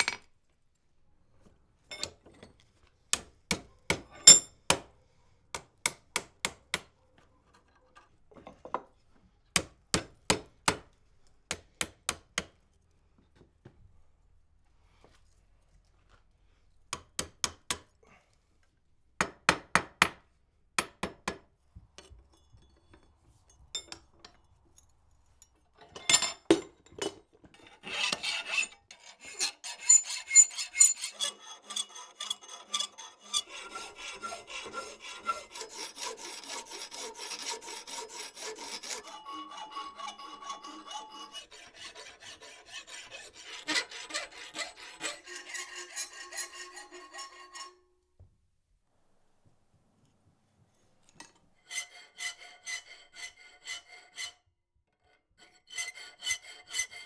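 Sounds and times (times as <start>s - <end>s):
hand file rasping on metal: 27.6s - 47.8s, 51.6s - 54.5s, 55.2s - 57.0s.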